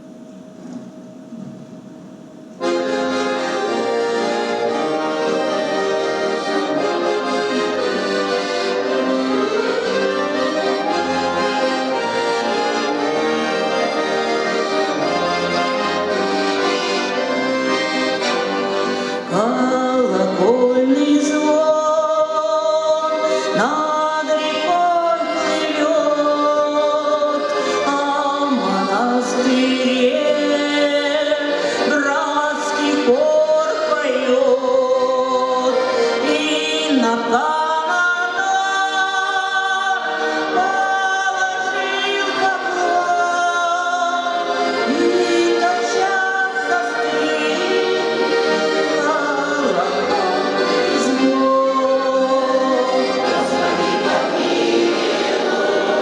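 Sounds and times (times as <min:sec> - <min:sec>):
choir singing: 0:02.7 - 0:27.5, 0:36.9 - 0:56.0.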